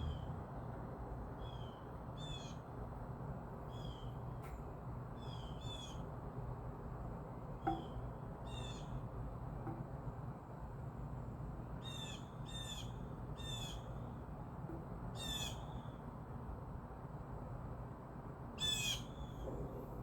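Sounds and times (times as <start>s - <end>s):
steady low hum: 19.2s - 20.0s.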